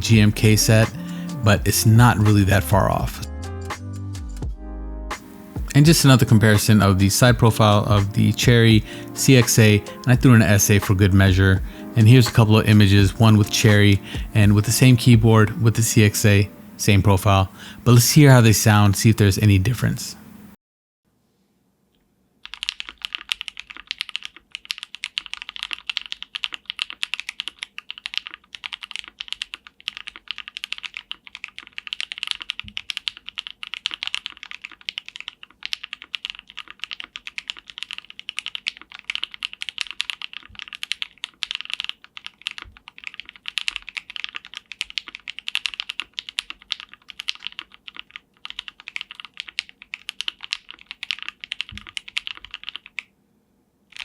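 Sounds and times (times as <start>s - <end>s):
mechanical keyboard typing: 22.4s - 53.1s.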